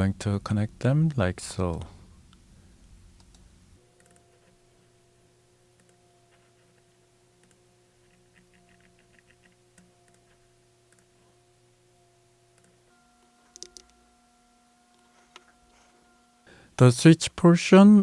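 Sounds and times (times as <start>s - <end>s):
computer clicks: 4.0s - 4.6s, 5.8s - 11.2s, 12.5s - 14.0s.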